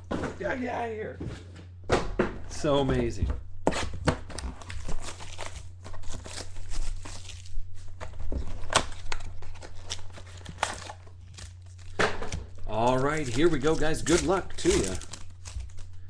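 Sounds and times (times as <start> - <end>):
low electrical hum: 0.0 - 16.0
packaging crinkling and tearing: 3.7 - 16.0.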